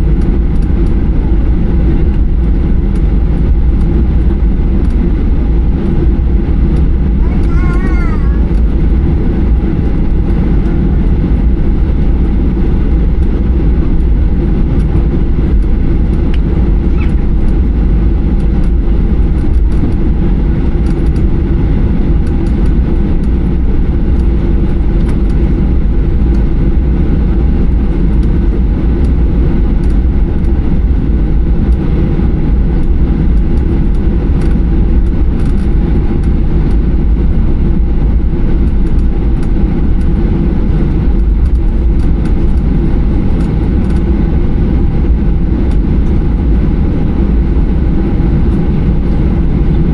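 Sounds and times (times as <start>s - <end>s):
jet engine rumble in cabin: 0.0s - 49.9s.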